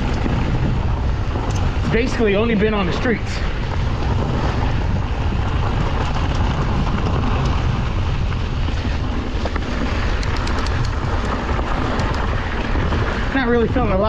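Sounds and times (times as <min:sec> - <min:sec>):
bike tyres rolling over dirt: 0:00.0 - 0:14.0
wind rushing over microphone: 0:00.0 - 0:14.0
light clicks and rattles: 0:09.4 - 0:12.3.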